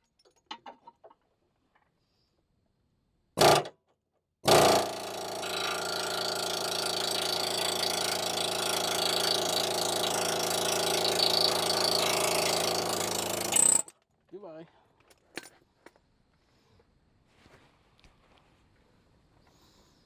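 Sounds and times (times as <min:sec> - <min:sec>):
pneumatic air hammer: 0:03.4 - 0:03.7, 0:04.5 - 0:13.9.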